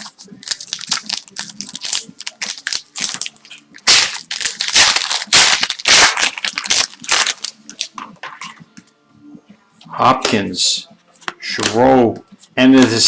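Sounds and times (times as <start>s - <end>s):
card pack wrapper tearing and crinkling: 0.0s - 7.9s.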